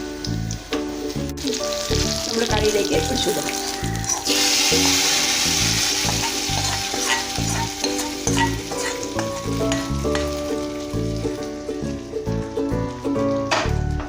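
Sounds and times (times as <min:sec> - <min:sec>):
hot oil sizzling: 0:00.0 - 0:14.0.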